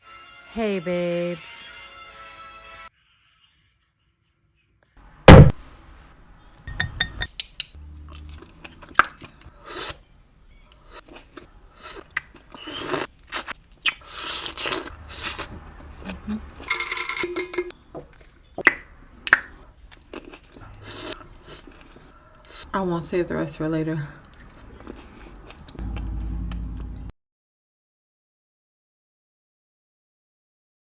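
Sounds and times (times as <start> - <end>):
loud knock: 5.3 - 5.6
chewing and biting fruit: 7.8 - 16.6, 18.1 - 22.7, 24.2 - 27.0.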